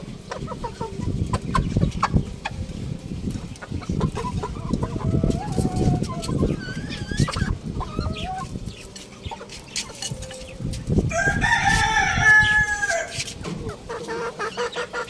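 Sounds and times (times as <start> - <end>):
clucks and chirps: 0.2 - 15.0
young rooster crowing: 11.0 - 13.3.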